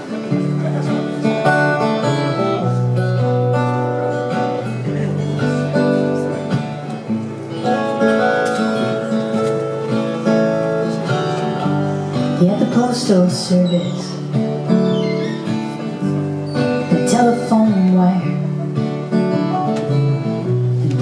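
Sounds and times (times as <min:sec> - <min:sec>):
acoustic guitar strumming chords: 0:00.0 - 0:21.0.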